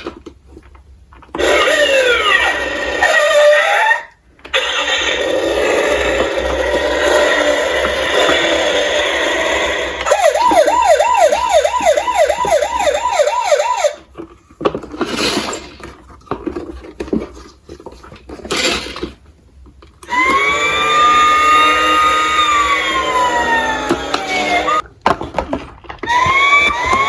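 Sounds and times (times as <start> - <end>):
siren wail: 7.3 - 14.1, 20.1 - 24.8, 26.1 - 27.0
emergency siren yelping: 8.1 - 14.1, 20.1 - 24.8, 26.1 - 27.0.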